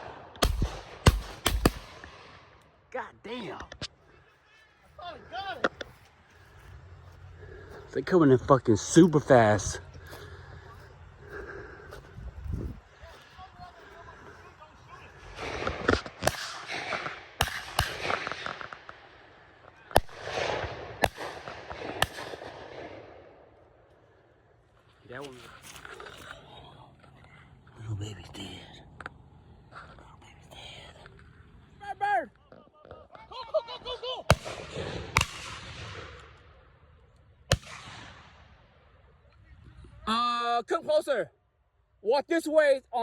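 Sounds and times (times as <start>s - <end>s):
shotgun shots: 0.0s - 2.6s, 15.2s - 23.6s, 34.3s - 36.6s, 37.5s - 38.8s.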